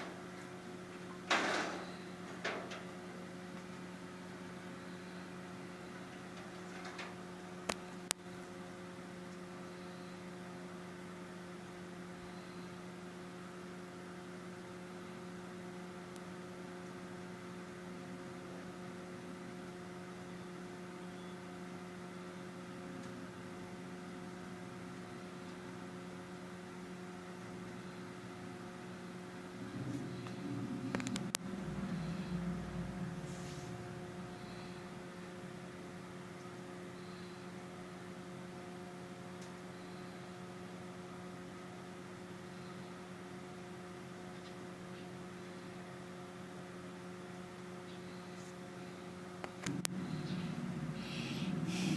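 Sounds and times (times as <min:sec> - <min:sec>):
electrical hum: 0:00.0 - 0:51.9.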